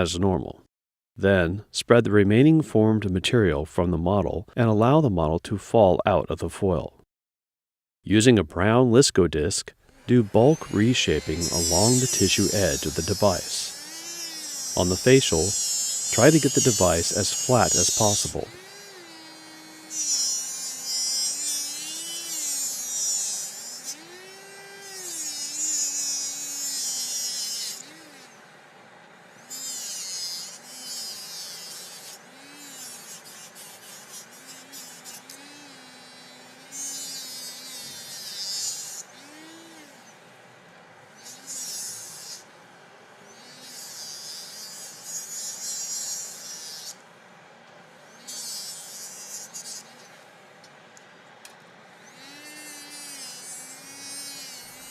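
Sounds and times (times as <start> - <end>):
dental handpiece motor whine: 9.9 - 40.3, 41.1 - 42.5, 43.2 - 47.0, 48.0 - 50.2, 51.4 - 54.9.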